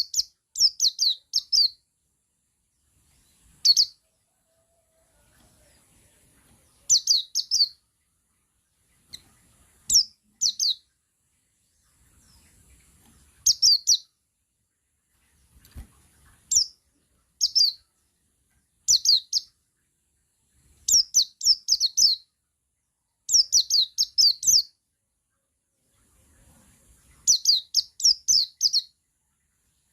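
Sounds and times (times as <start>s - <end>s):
bird singing quick high chirps: 13.5s - 14.1s.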